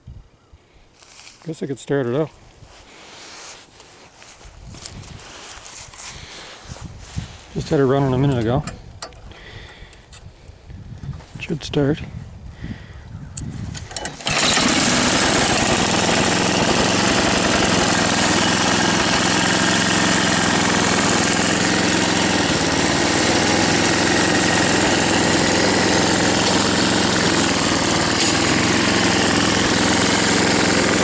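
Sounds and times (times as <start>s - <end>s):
snowblower engine starting: 7.2s - 9.8s, 13.7s - 31.0s
starter clicks: 7.6s - 10.3s, 13.4s - 31.0s.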